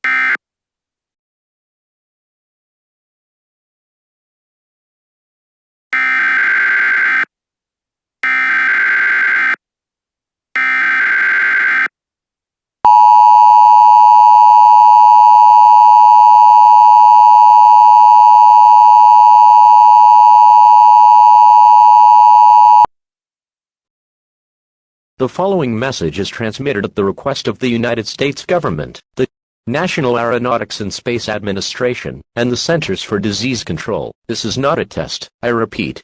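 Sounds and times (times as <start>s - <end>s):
steady dual tone alert: 12.9s - 22.9s.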